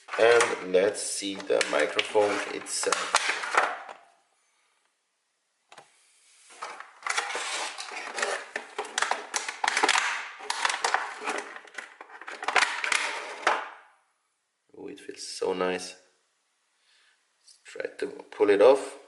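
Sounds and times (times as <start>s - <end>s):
packaging crinkling and rustling: 0.0s - 4.0s, 6.5s - 13.6s.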